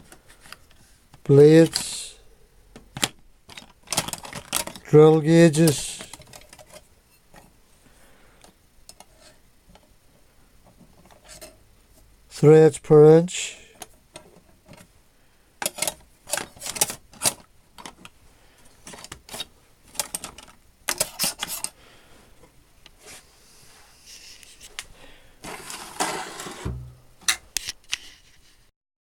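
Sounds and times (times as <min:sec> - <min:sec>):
tools scraping rattle in drawer: 0:15.6 - 0:18.0, 0:18.9 - 0:21.8, 0:25.4 - 0:27.4.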